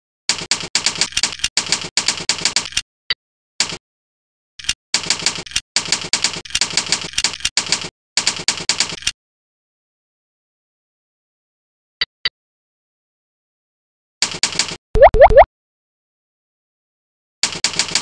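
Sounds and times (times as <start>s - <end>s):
typewriter keystroke clacks: 0.3s - 2.8s, 4.6s - 9.2s, 14.2s - 14.8s, 17.4s - 18.0s.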